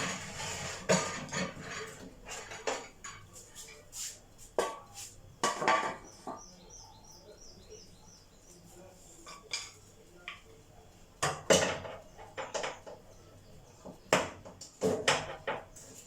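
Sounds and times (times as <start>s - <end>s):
pans and utensils clattering: 0.0s - 3.8s, 4.6s - 6.5s, 9.2s - 10.4s, 11.2s - 16.0s
bird chirping: 5.8s - 8.9s, 12.0s - 14.2s.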